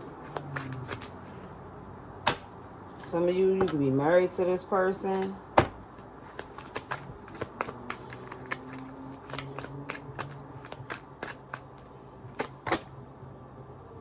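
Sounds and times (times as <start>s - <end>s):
cards being shuffled: 0.0s - 1.5s, 5.9s - 11.7s.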